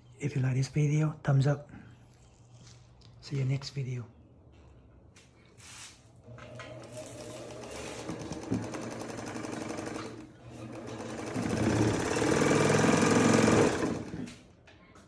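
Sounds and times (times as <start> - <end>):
sewing machine clattering: 6.3 - 14.4.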